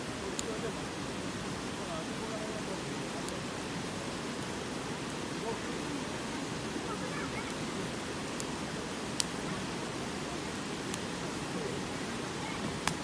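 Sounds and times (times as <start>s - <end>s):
fire crackling pops: 0.0s - 0.8s, 3.1s - 3.5s, 7.1s - 13.0s
bonfire hissing: 0.0s - 13.0s.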